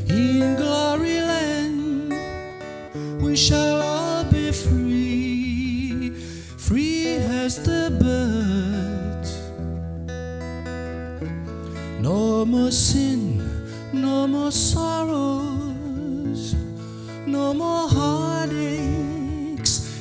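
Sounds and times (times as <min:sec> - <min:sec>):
acoustic guitar strumming: 0:00.0 - 0:20.0.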